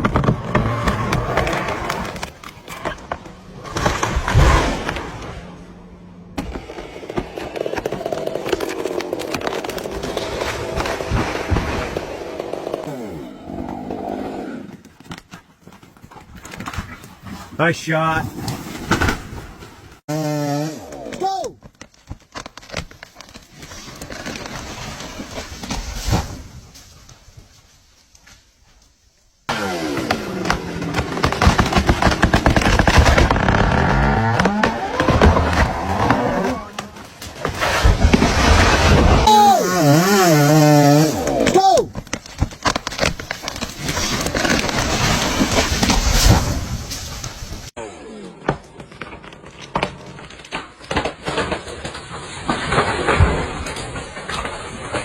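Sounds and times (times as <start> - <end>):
tree crackling and falling: 0.0 - 13.1, 21.0 - 28.9, 29.6 - 55.0
chainsaw running: 20.1 - 21.0, 39.3 - 41.5
tree crashing into ground: 29.8 - 41.2.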